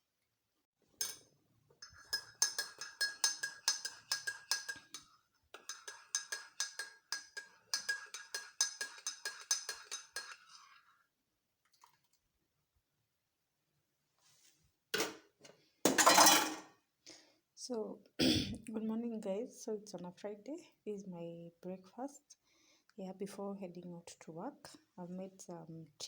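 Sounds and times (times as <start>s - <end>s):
metal spoon clinking in a cup: 1.0s - 10.8s.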